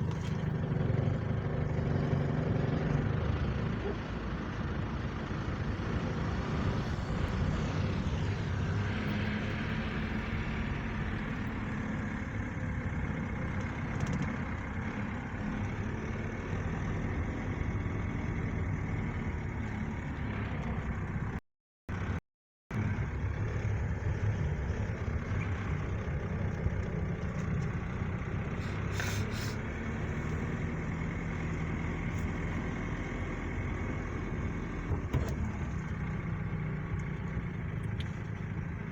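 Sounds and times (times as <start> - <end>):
vehicle engine rumble: 0.0 - 38.9.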